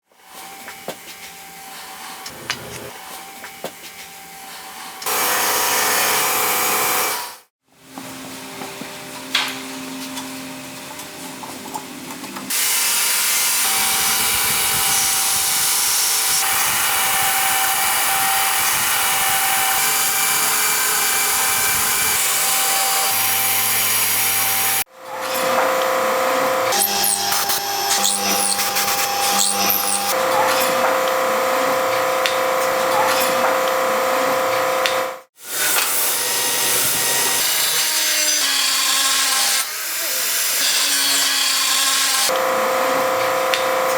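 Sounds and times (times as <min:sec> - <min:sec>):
power tool whining on steel: 0:12.5 - 0:43.9.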